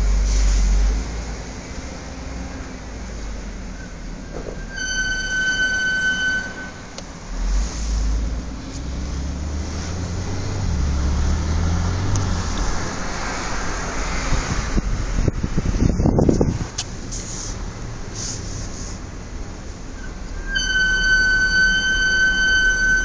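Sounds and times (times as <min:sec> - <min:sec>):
car rolling rumble: 0:00.0 - 0:23.0
car brakes squealing: 0:03.7 - 0:08.2, 0:19.9 - 0:23.0.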